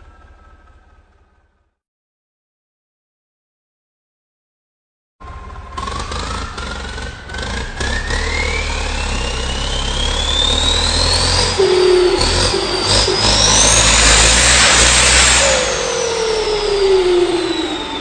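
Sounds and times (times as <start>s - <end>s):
turbocharger whistling: 0.0s - 1.2s, 5.2s - 18.0s
car engine running low: 0.0s - 1.8s, 5.2s - 18.0s.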